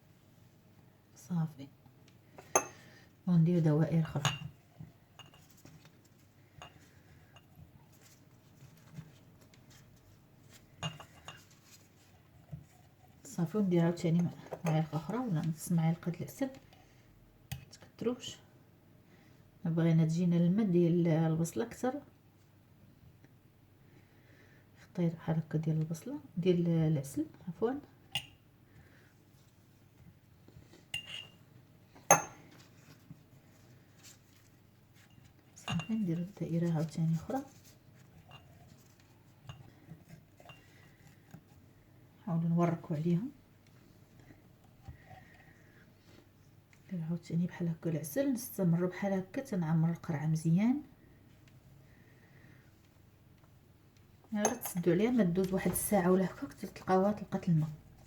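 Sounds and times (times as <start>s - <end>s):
metal spoon clinking against jar: 28.1s - 28.4s, 31.0s - 31.4s, 35.6s - 36.1s, 54.4s - 54.8s.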